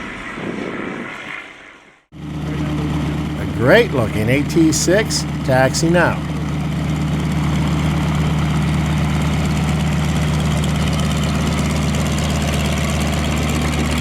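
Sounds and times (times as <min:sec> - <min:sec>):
radial aircraft engine and propeller: 0:02.2 - 0:03.9, 0:06.2 - 0:14.0.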